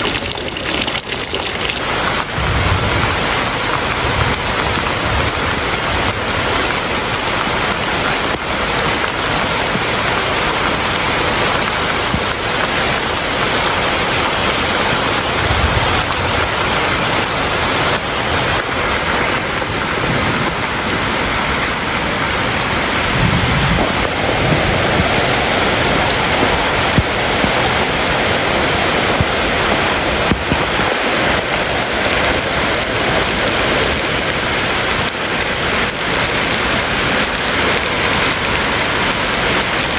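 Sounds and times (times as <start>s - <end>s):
heavy rainfall: 0.0s - 39.9s
brief low rumbles: 2.2s - 6.0s.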